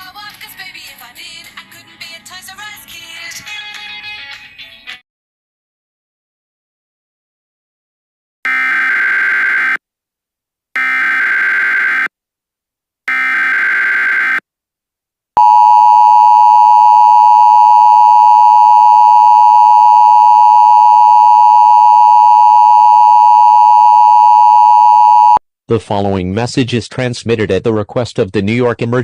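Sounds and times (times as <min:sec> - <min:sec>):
two-tone attention signal: 0:15.4 - 0:25.4.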